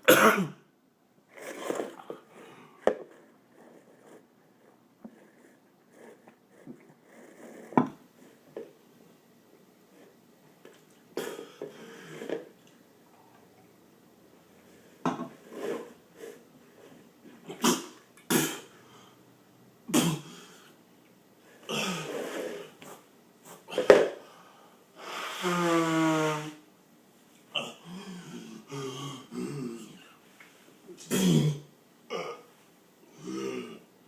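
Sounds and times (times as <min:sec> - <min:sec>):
man coughing and clearing throat: 0:00.0 - 0:00.6, 0:19.9 - 0:20.3, 0:31.0 - 0:32.4.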